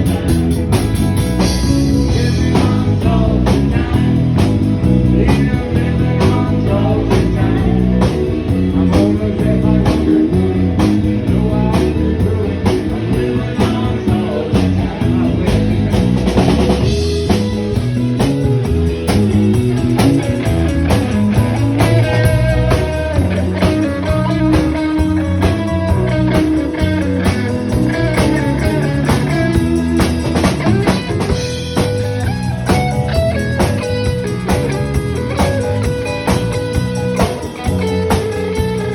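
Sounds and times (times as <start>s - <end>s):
drum kit beat: 0.0s - 38.9s
guitar: 0.0s - 38.9s
rock band playing: 0.0s - 38.9s
person singing: 1.5s - 17.4s, 21.4s - 31.8s.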